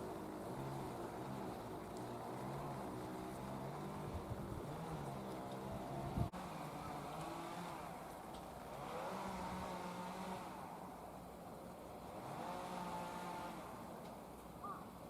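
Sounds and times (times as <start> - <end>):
electric train humming: 0.0 - 8.2.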